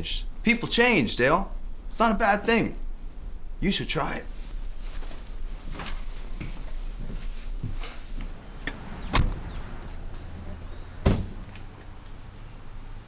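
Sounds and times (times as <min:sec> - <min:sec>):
door heavy thuds: 0:11.0 - 0:11.5.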